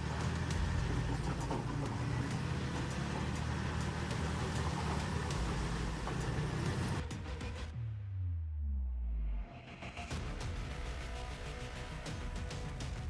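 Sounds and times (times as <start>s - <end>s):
diesel engine running: 0.0s - 7.7s.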